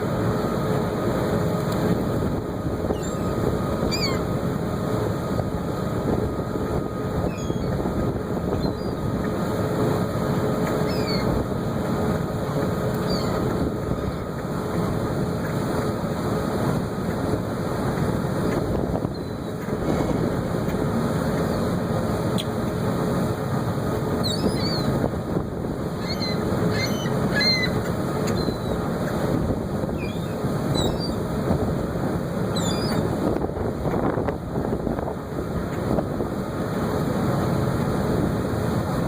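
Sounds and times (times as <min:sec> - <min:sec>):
ferry engine hum: 0:00.0 - 0:39.0
sweeping bird calls: 0:02.9 - 0:04.3, 0:07.2 - 0:07.8, 0:08.5 - 0:09.0, 0:10.8 - 0:11.4, 0:13.0 - 0:13.4, 0:24.2 - 0:25.0, 0:25.9 - 0:28.8, 0:29.9 - 0:31.3, 0:32.5 - 0:33.1
wind noise: 0:16.7 - 0:21.0, 0:28.8 - 0:39.0.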